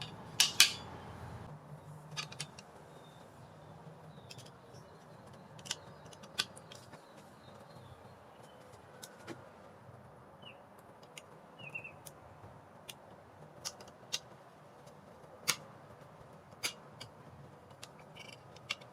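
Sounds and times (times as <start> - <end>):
small metal parts clicking and tapping: 0.0 - 0.9, 2.1 - 2.8, 4.2 - 7.3, 13.6 - 15.7, 16.5 - 18.9
faint bird chirps: 10.4 - 10.7, 11.6 - 12.0.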